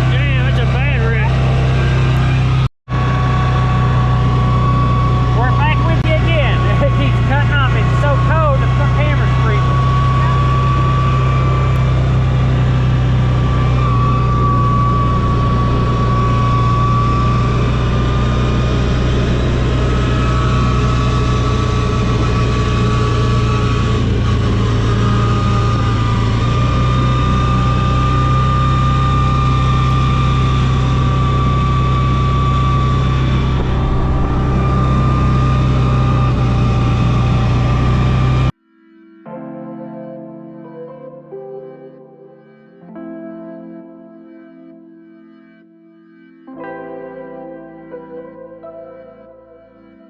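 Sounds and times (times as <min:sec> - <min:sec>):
steady high whine: 0:00.0 - 0:38.6
vehicle engine low drone: 0:00.0 - 0:38.6.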